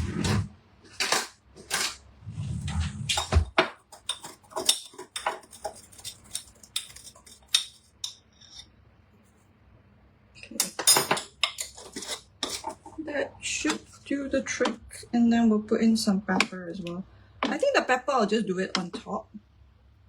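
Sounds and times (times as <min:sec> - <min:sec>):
utensils clinking against pot: 0:03.1 - 0:08.7, 0:10.4 - 0:13.0.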